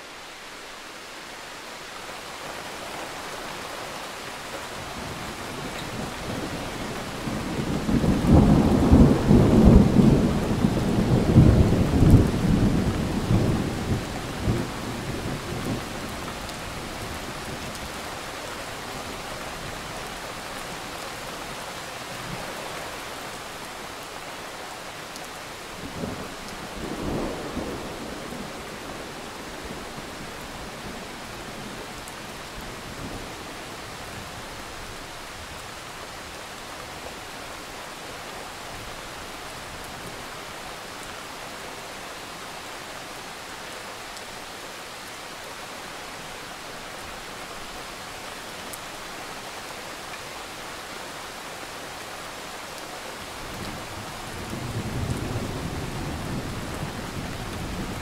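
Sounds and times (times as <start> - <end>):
steady rain hiss: 0.0 - 58.0
thunder rumble: 7.2 - 15.8.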